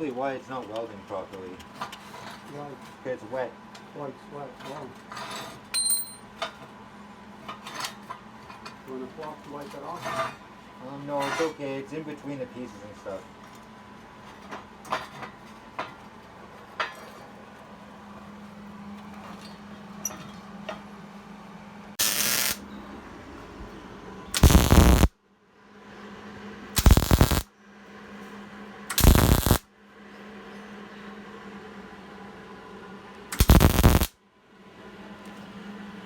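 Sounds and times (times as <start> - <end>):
steady low hum: 12.5 - 34.1
welding arc crackling: 22.0 - 22.6, 24.4 - 25.1, 26.8 - 27.4, 28.9 - 29.6, 33.4 - 34.1.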